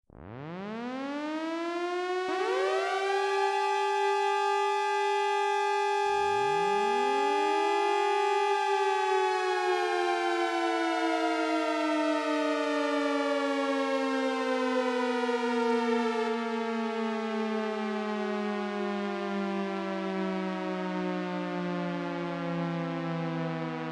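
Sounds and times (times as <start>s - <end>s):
warning sirens winding up: 0.2s - 18.4s.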